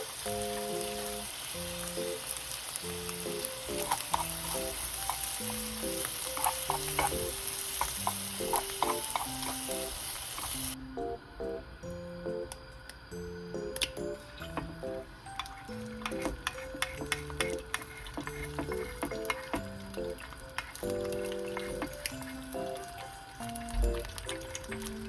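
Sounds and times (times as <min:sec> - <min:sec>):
food sizzling in a frying pan: 0:00.0 - 0:10.8, 0:13.4 - 0:25.0
utensil scraping and tapping pan: 0:14.5 - 0:22.2.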